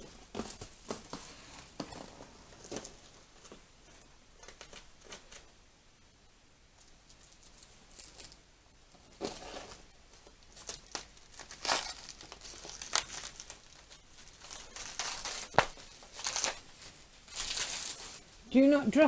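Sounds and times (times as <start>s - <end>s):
packaging crinkling and tearing: 6.8s - 8.4s, 9.1s - 18.3s.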